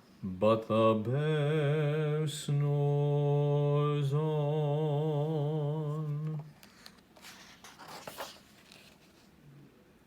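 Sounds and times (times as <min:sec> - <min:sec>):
man singing a low note: 0:00.2 - 0:06.5
faint rustles and clicks: 0:05.8 - 0:09.4.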